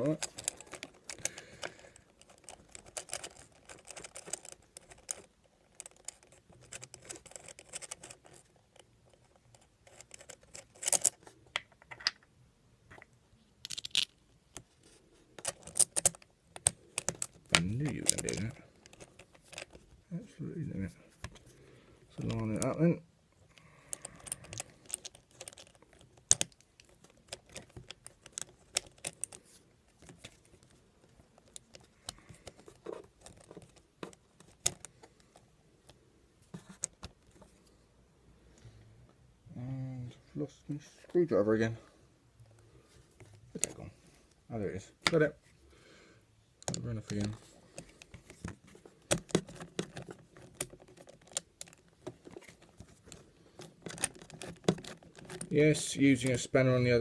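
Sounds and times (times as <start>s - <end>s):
small metal parts clicking: 0.0s - 8.5s, 9.5s - 11.2s, 13.6s - 14.2s, 15.4s - 19.8s, 23.6s - 30.7s, 49.1s - 56.4s.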